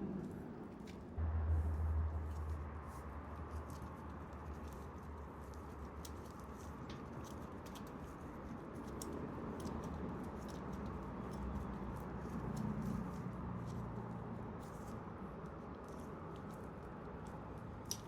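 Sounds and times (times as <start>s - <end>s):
steady low hum: 0.4s - 3.8s
light clicks of chain tool: 4.6s - 18.0s.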